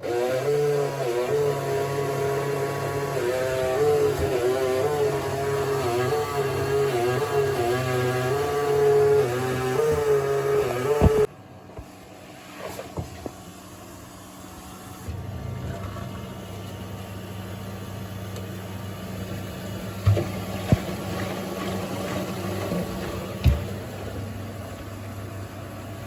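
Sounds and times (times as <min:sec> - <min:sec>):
washing machine rumbling hum: 0:09.7 - 0:26.0.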